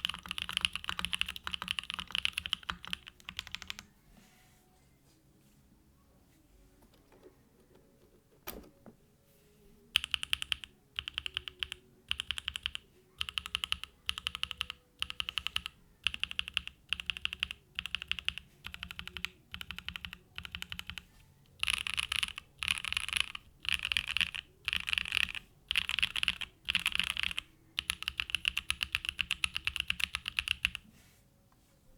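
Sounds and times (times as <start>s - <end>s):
mechanical keyboard typing: 0.0s - 3.9s, 10.0s - 30.8s.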